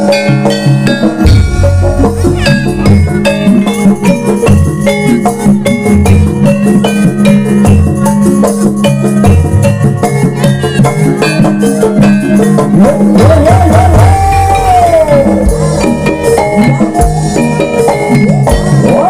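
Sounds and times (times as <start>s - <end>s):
drums: 0.0s - 19.0s
pitched metal percussion: 0.0s - 19.0s
held low tone: 1.2s - 4.7s
wavering gliding tone: 1.2s - 5.2s.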